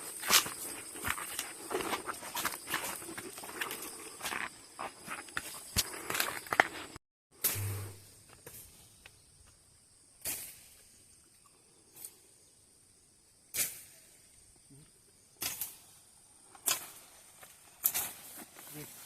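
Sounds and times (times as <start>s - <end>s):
footsteps rustling in dry undergrowth: 17.2s - 19.0s.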